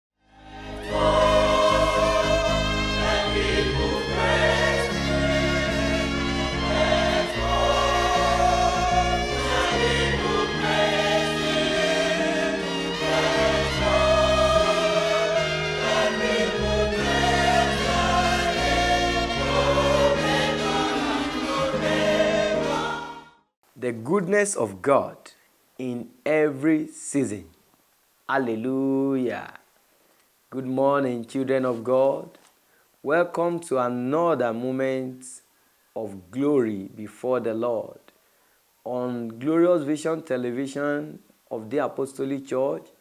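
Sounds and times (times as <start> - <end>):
choir singing gospel music: 0.3 - 23.4
instrumental backing: 0.5 - 23.2.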